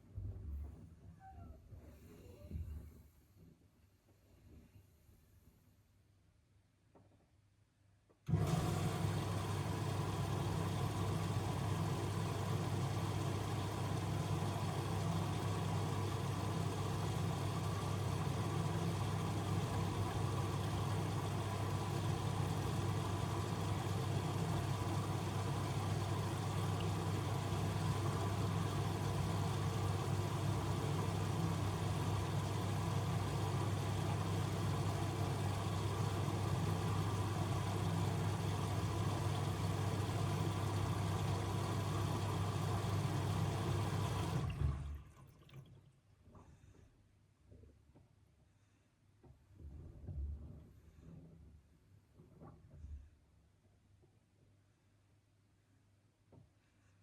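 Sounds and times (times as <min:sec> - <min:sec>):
washing machine humming: 0:08.3 - 0:46.0.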